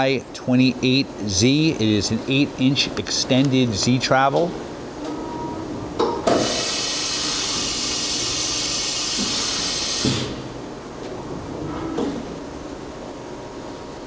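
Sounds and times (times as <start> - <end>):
compressed air hissing: 6.3 - 10.5.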